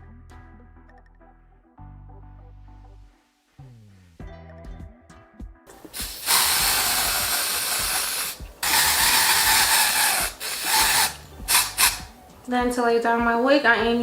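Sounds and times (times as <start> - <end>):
spray can hissing: 5.8 - 12.2.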